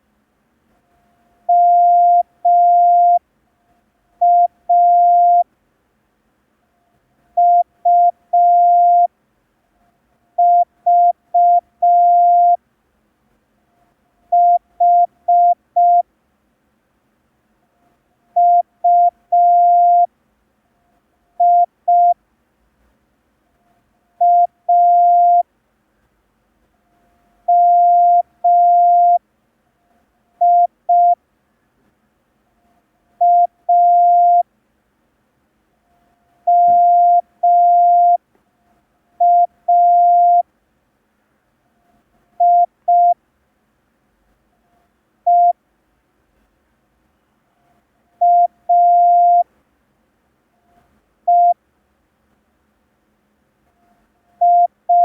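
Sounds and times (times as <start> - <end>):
morse code beeps: 1.5 - 3.2, 4.2 - 5.4, 7.4 - 9.1, 10.4 - 12.6, 18.4 - 20.1, 21.4 - 22.2, 24.2 - 25.4, 27.5 - 29.2, 30.4 - 31.2, 33.2 - 34.4, 36.5 - 38.2, 39.2 - 40.4, 42.4 - 43.2, 48.2 - 49.4, 51.3 - 51.6, 54.4 - 55.0.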